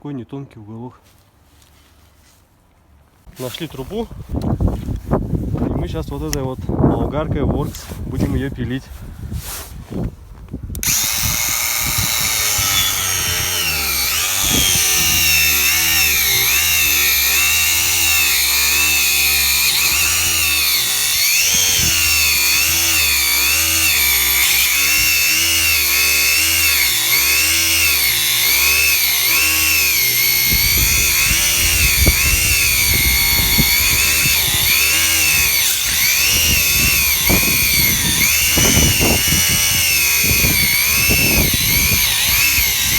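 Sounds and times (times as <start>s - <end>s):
angle grinder cutting cardboard: 10.8s - 42.9s.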